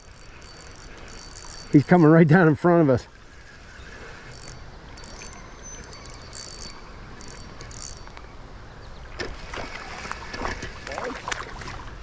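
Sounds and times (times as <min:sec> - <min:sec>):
insects buzzing: 0:00.0 - 0:02.3, 0:03.1 - 0:08.4.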